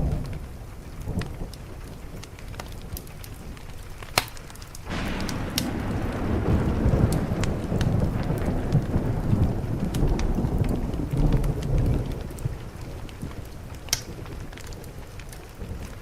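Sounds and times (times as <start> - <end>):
steady rain: 0.0 - 16.0
thunder rumbling: 0.0 - 16.0
wood fire crackling: 0.0 - 16.0
sharp pop: 4.1 - 8.9.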